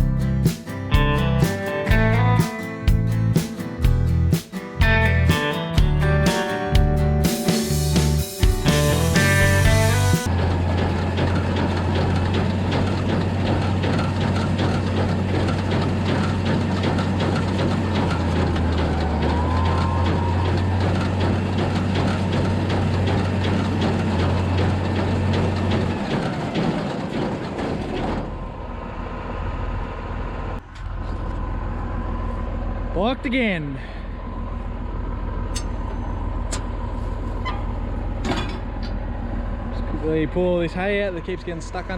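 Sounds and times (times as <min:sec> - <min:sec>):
tractor engine running: 0:00.0 - 0:41.9
hay baler mechanical clatter: 0:07.6 - 0:33.6, 0:34.6 - 0:41.9.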